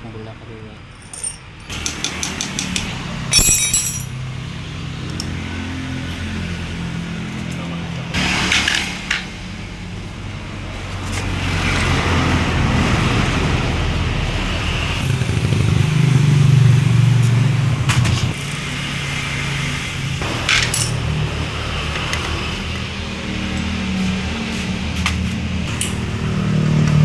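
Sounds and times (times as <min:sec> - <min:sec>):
motorcycle engine running: 0:14.9 - 0:27.0.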